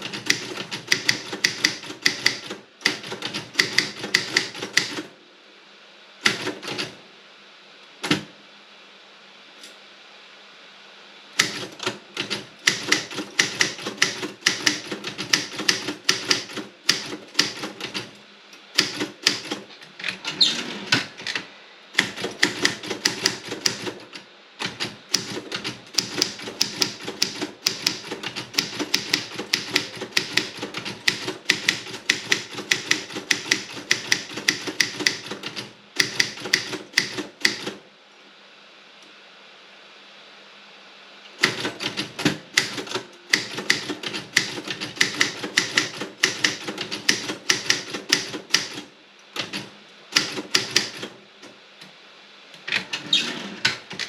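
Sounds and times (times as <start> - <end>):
typewriter keys striking: 0.0 - 5.1, 11.4 - 18.1, 18.8 - 19.6, 22.0 - 37.8, 41.4 - 51.1.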